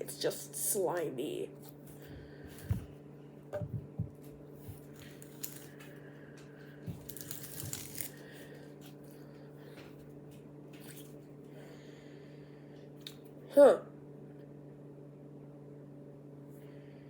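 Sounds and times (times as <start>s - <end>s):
steady low hum: 0.0s - 17.0s
slime popping and crackling: 7.0s - 8.2s.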